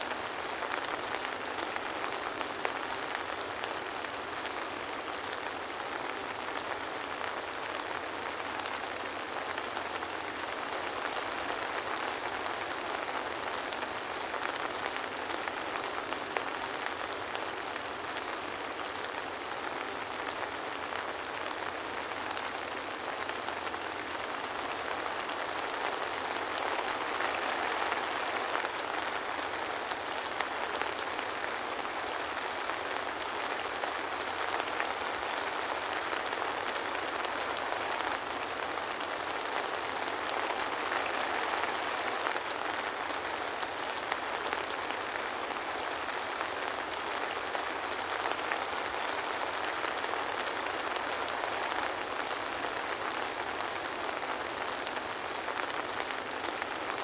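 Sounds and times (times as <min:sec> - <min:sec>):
soft rain pattering: 0:00.0 - 0:57.0.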